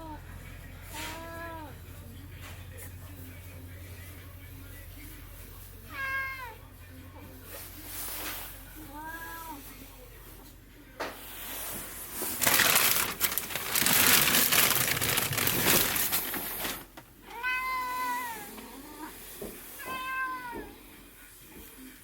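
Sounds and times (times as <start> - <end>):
cat meowing: 5.9 - 6.6, 17.2 - 19.1, 19.8 - 20.8
loud rustling handling noise: 11.7 - 17.8.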